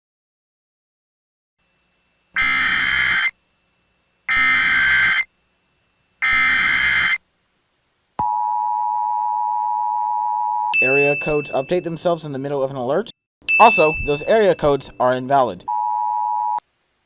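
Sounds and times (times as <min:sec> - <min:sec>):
two-tone attention signal: 0:02.4 - 0:03.3, 0:04.3 - 0:05.2, 0:06.2 - 0:07.2, 0:10.8 - 0:11.7, 0:13.5 - 0:14.6.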